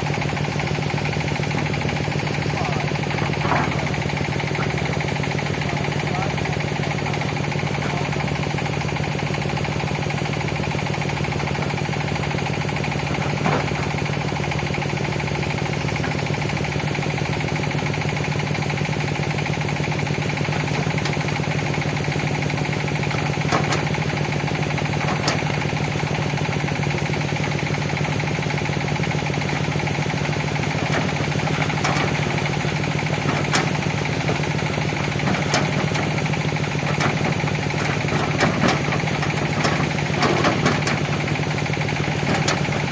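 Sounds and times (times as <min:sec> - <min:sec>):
excavator diesel engine running: 0:00.0 - 0:42.9
sharp knocks: 0:20.2 - 0:26.4, 0:29.1 - 0:42.9.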